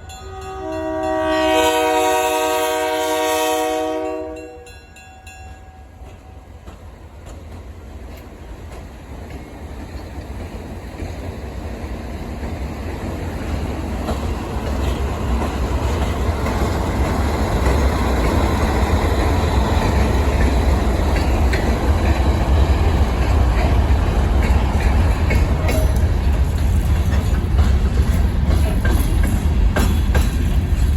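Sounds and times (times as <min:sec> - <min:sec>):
diesel train rumble: 0:00.0 - 0:30.9.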